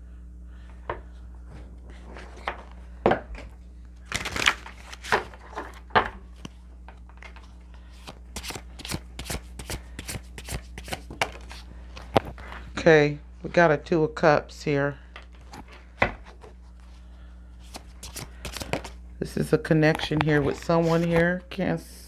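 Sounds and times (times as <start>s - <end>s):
cards shuffled: 1.9s - 2.8s, 4.1s - 12.6s, 15.3s - 17.0s, 17.6s - 19.0s, 19.8s - 21.4s
card clicks: 8.0s - 11.6s, 17.6s - 19.0s, 19.8s - 21.2s.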